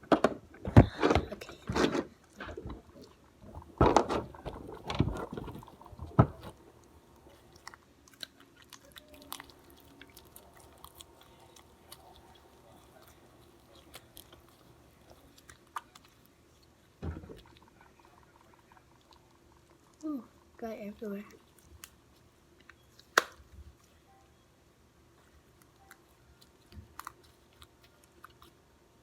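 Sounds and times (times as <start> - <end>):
slime squelching: 0.9 - 24.1.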